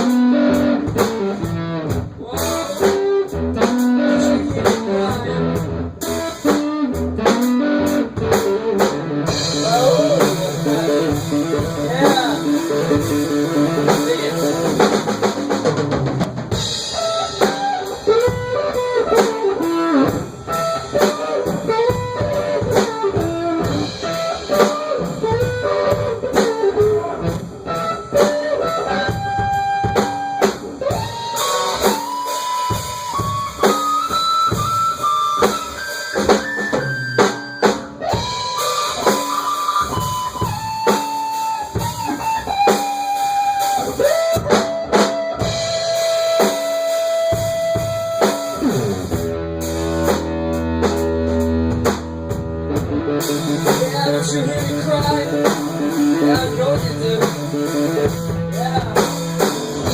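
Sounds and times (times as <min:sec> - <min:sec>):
drums: 0:00.0 - 0:59.9
lead guitar bending notes: 0:00.0 - 0:59.9
rhythm guitar: 0:00.0 - 0:59.9.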